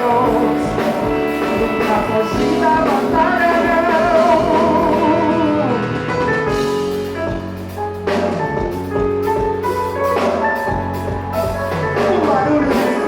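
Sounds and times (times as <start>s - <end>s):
gospel band instrumental: 0.0s - 13.0s.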